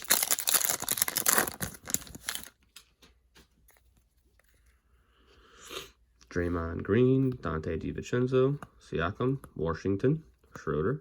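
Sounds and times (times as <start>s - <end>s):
plastic wrapper tearing and crinkling: 0.0s - 2.7s.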